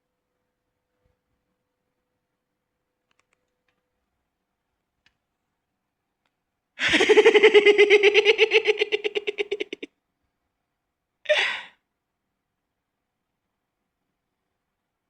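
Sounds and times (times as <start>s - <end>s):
high voice giggling: 6.8s - 9.9s.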